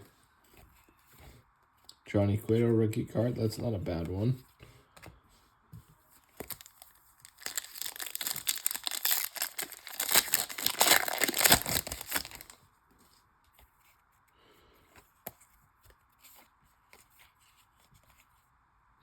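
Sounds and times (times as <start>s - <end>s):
wrapper crinkling and tearing: 6.4s - 12.6s.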